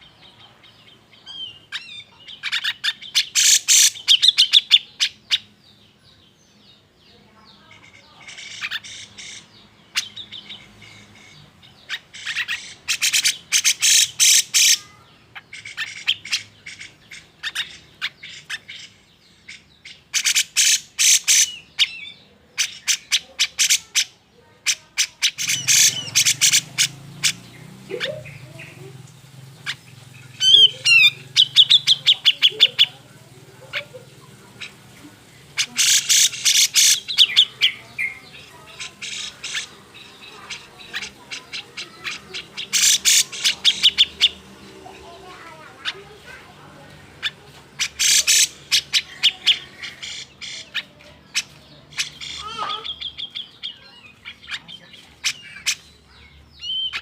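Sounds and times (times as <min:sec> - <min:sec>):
bird harsh chattering call: 0:00.0 - 0:05.8, 0:07.5 - 0:57.0.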